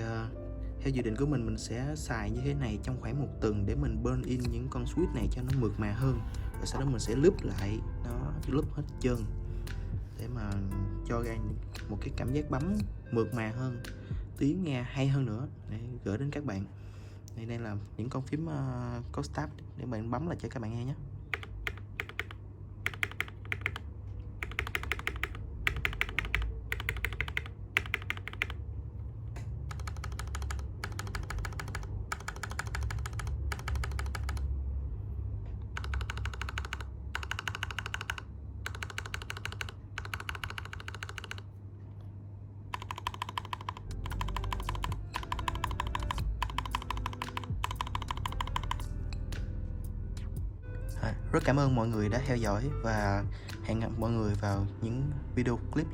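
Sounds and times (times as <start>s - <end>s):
mechanical keyboard keystrokes: 21.3s - 23.8s, 24.4s - 28.6s, 29.4s - 34.5s, 35.7s - 41.5s, 42.7s - 48.9s.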